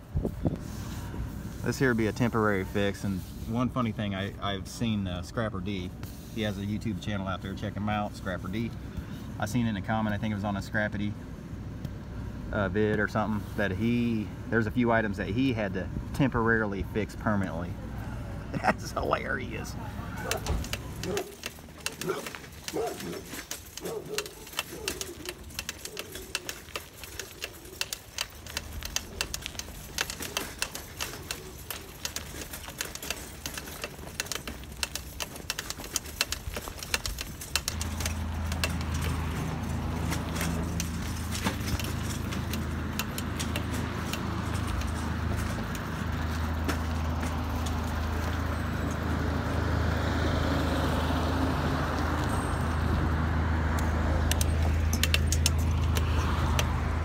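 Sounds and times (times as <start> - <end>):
vehicle engine humming: 0.0 - 57.0
light clicking and rattling: 20.2 - 49.1, 53.7 - 57.0.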